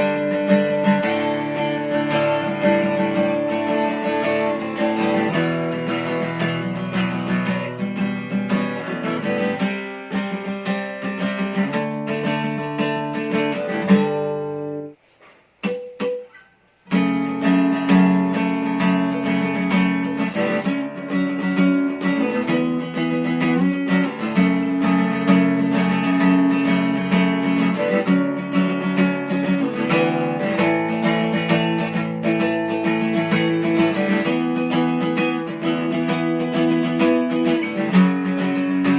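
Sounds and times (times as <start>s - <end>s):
light guitar pluck: 0.0s - 15.0s, 15.6s - 38.9s
acoustic guitar strumming: 0.0s - 38.9s.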